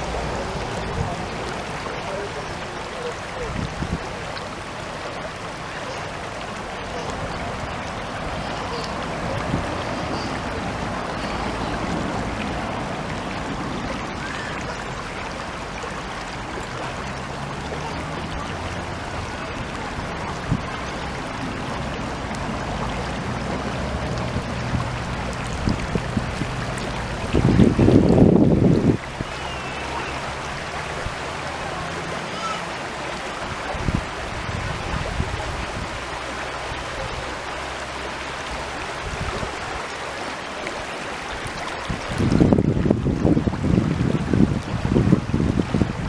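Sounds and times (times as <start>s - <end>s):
mountain stream flowing: 0.0s - 46.0s.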